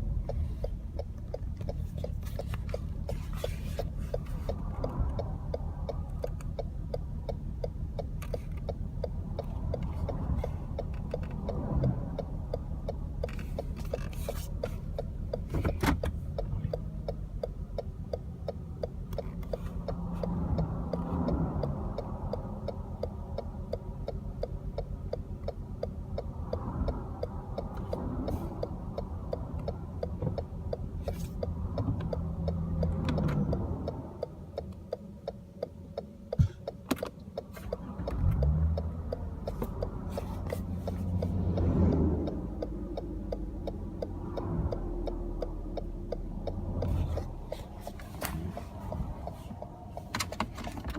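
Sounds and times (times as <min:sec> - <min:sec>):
car engine running roughly: 0:00.0 - 0:20.2
fast engine ticking: 0:00.0 - 0:50.9.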